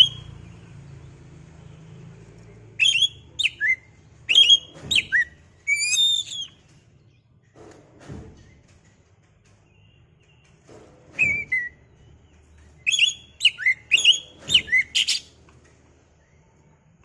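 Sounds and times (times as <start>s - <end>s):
bird singing whistled notes: 0.0s - 0.4s, 2.8s - 6.6s, 11.2s - 11.9s, 12.8s - 15.3s.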